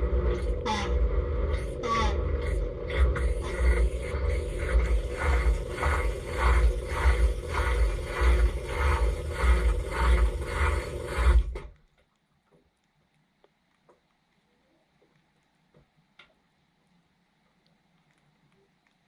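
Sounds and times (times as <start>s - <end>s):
dishwasher pump hum: 0.0s - 11.8s
pulsing water spray: 0.0s - 11.8s.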